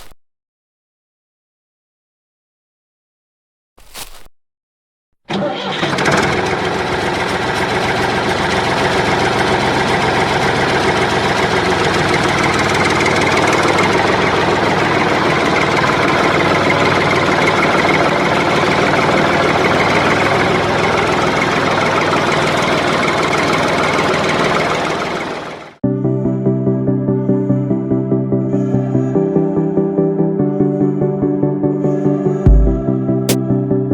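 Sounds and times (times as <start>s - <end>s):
small tractor motor running: 5.3s - 25.8s.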